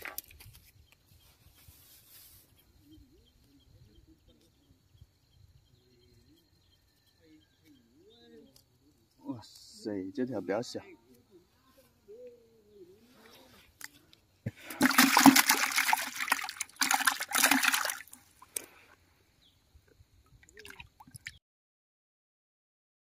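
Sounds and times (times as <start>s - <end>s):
water splashing: 14.5s - 18.7s, 20.4s - 21.4s.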